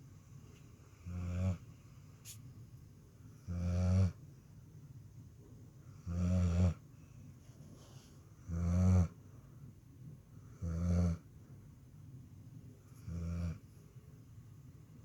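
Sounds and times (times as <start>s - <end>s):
dog snoring: 1.0s - 1.7s, 3.4s - 4.2s, 6.0s - 6.8s, 8.4s - 9.2s, 10.5s - 11.3s, 12.9s - 13.7s.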